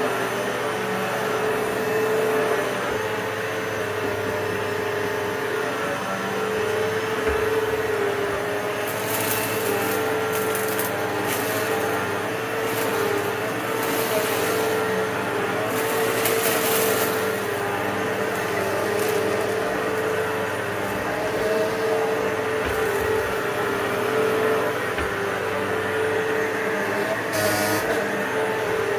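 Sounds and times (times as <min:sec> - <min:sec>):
vacuum cleaner motor whine: 0:00.0 - 0:28.9
debris crackling and rattling: 0:08.8 - 0:26.4.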